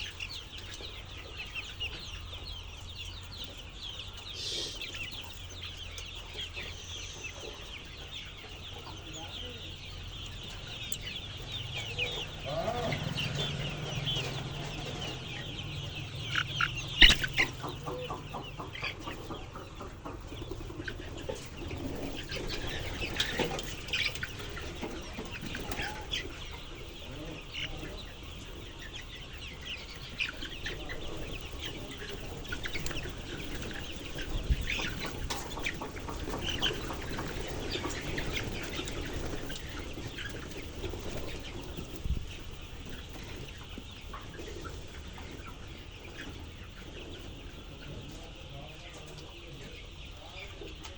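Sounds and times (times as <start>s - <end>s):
chickens clucking and calling: 0.0s - 50.9s.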